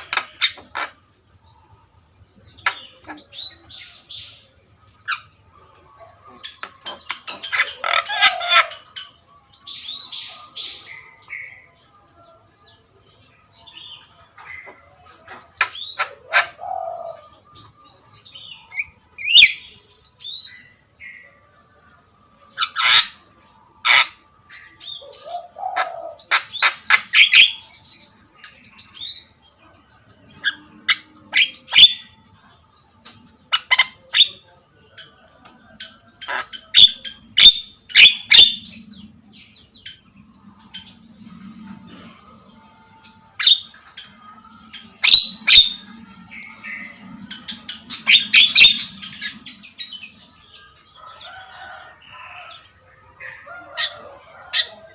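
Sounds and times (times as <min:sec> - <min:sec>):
myna bird calling: 0:06.0 - 0:11.7, 0:13.6 - 0:21.2, 0:22.5 - 0:29.3, 0:35.8 - 0:42.2, 0:43.0 - 0:52.6.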